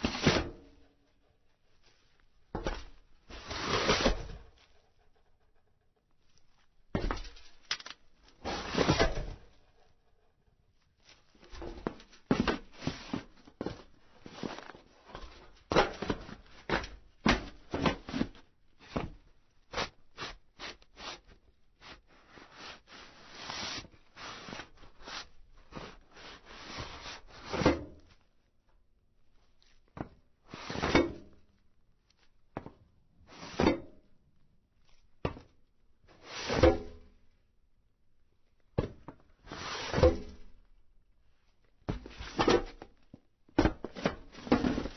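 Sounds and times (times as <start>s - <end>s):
scuffing slides on sheet metal: 3.3s - 4.5s, 8.4s - 9.4s, 19.7s - 27.8s, 33.3s - 33.8s, 39.5s - 40.2s
footsteps on metal roof: 11.4s - 19.3s.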